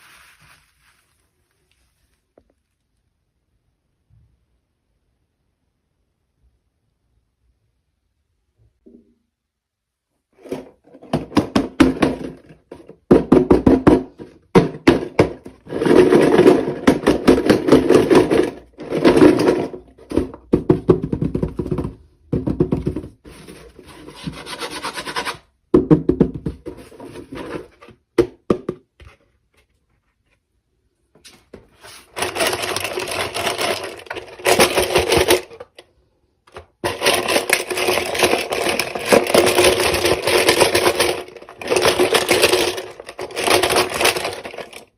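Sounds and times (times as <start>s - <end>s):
handling noise rubbing and scraping: 0.0s - 2.8s, 14.1s - 25.6s, 26.4s - 28.1s, 29.0s - 35.8s, 36.6s - 44.9s.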